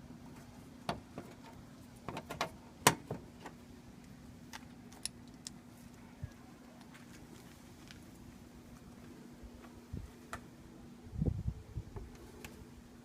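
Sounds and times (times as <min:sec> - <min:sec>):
faint steady hum: 0:00.0 - 0:13.0
plastic rivets clicking and snapping: 0:04.0 - 0:05.6.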